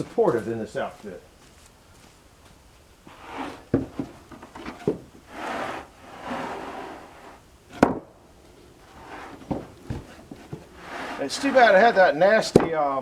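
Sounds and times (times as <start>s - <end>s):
wooden boards scraping together: 3.1s - 13.0s
sharp wooden knocks: 3.4s - 5.2s, 7.7s - 8.1s, 9.2s - 12.8s.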